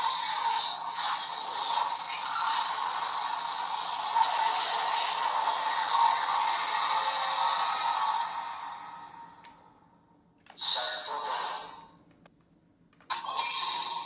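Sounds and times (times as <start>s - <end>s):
toy speaker hissing sound effect: 0.0s - 8.2s.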